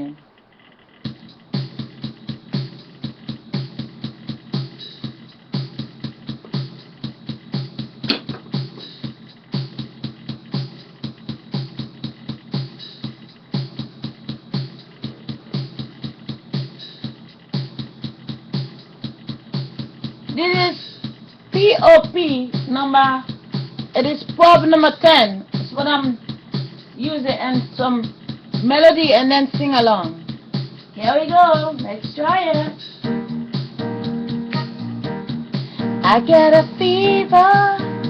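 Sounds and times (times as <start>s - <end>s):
drum machine pop beat: 1.0s - 38.0s.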